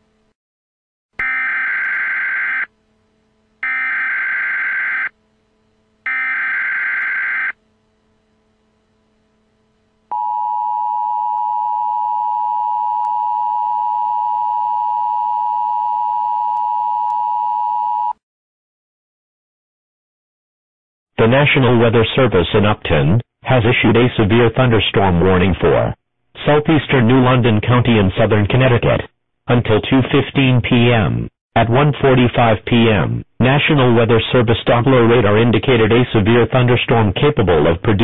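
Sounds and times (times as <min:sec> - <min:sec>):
steady attention tone: 0:01.2 - 0:16.1.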